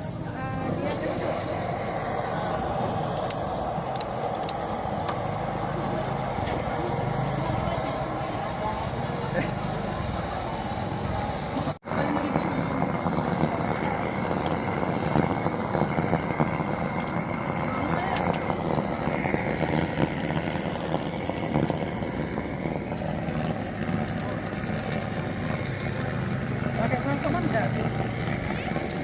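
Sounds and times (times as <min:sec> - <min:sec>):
many voices talking: 0:00.0 - 0:29.0
street noise: 0:00.0 - 0:29.0.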